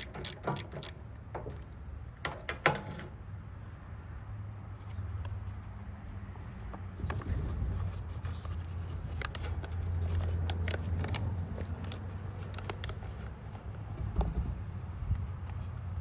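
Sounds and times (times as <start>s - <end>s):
wrench clicking on metal parts: 0.0s - 3.2s.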